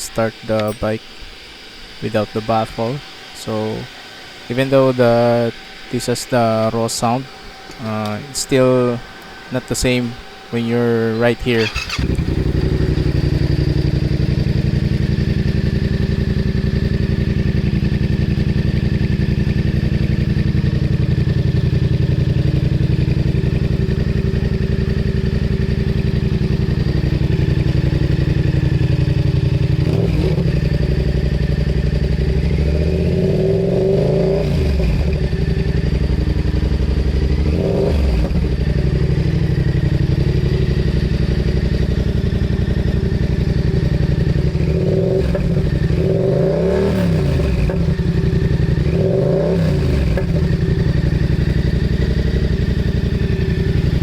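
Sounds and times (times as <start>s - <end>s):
motorcycle engine idling: 11.2s - 54.0s.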